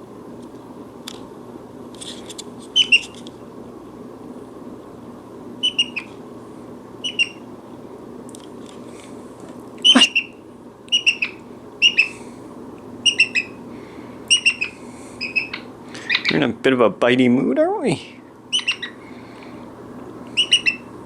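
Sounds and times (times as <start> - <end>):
parrot chirping: 2.8 - 3.1, 5.6 - 6.2, 7.0 - 7.5, 9.8 - 12.2, 13.0 - 13.6, 14.3 - 16.4, 18.5 - 19.0, 20.3 - 21.0.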